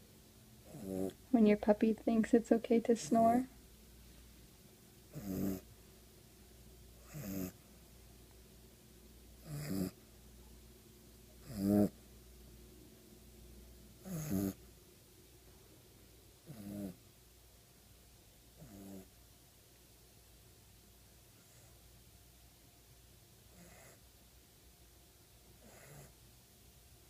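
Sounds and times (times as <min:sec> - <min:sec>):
puppy snoring: 0:00.6 - 0:01.3, 0:05.1 - 0:05.7, 0:06.9 - 0:07.6, 0:09.4 - 0:10.0, 0:11.4 - 0:12.0, 0:14.0 - 0:14.7, 0:16.4 - 0:17.1, 0:18.5 - 0:19.2, 0:21.4 - 0:21.8, 0:23.5 - 0:24.1, 0:25.5 - 0:26.2.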